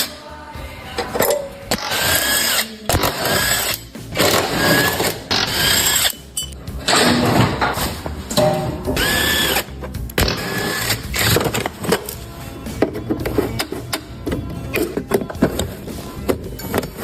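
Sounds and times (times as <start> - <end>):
power tool whirring: 1.8 - 6.2, 9.0 - 11.6.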